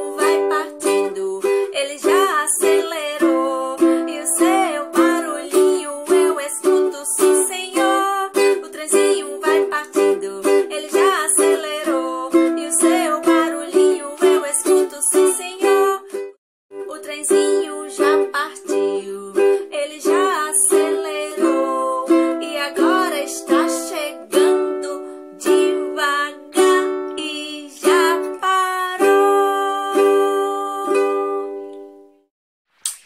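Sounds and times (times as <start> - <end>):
person singing: 0.0 - 16.2, 16.8 - 31.8
ukulele strumming chords: 0.0 - 32.2
short click: 32.8 - 33.0.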